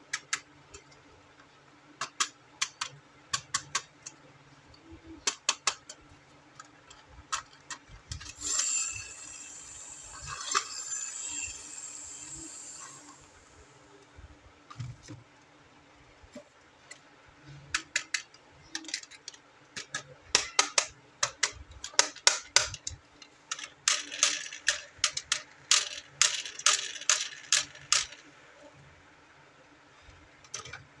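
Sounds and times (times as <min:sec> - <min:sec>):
plastic toy pieces clicking: 0:02.0 - 0:04.2, 0:05.2 - 0:06.0, 0:06.6 - 0:10.7, 0:17.7 - 0:28.3.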